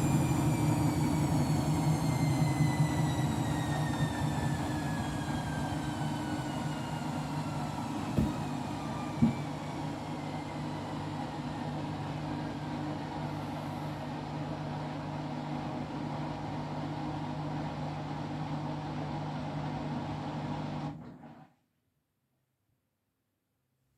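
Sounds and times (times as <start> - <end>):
washing machine spinning unbalanced: 7.9 - 9.6.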